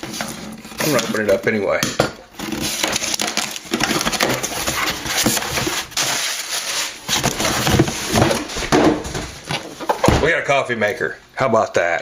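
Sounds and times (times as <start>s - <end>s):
cardboard box tearing and rustling: 2.4s - 9.5s.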